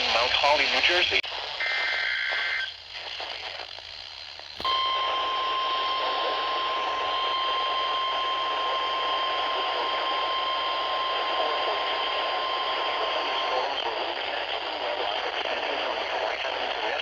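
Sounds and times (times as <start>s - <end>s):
radio static hiss: 0.0s - 17.0s
thin steady whistle: 4.6s - 14.2s.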